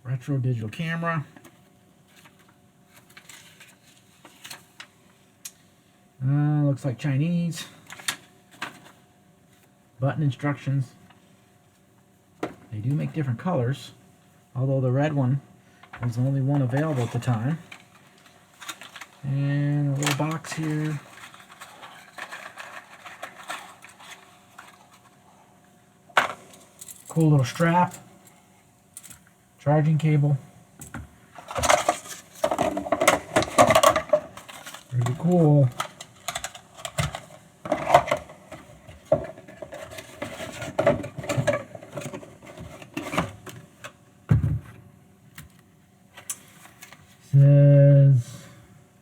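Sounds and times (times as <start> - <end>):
clicks taps and rustles of packaging: 30.8 - 47.0.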